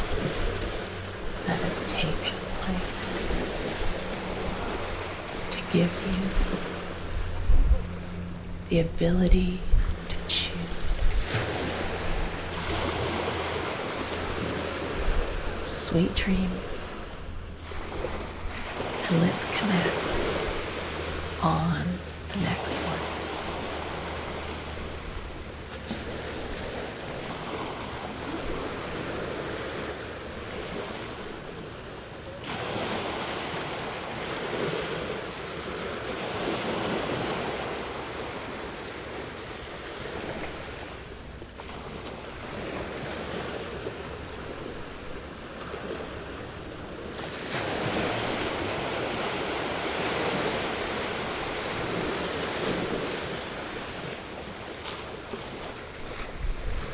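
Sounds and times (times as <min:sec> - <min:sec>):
ocean surf breaking: 0:00.0 - 0:08.7, 0:09.6 - 0:31.2, 0:36.2 - 0:56.9.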